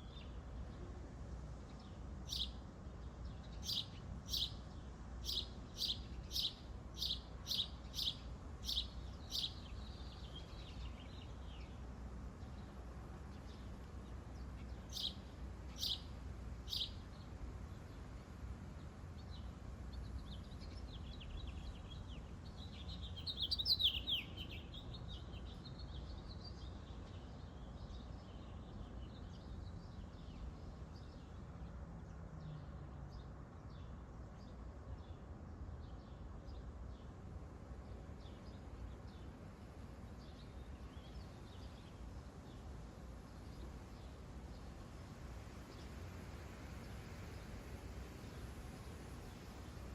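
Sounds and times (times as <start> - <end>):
songbirds chirping: 0.0 - 49.9
rapid bird twittering: 23.1 - 24.8.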